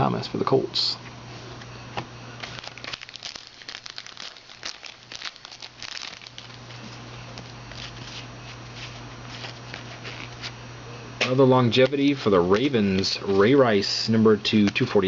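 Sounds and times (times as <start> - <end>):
wrapper crinkling: 2.4 - 7.0.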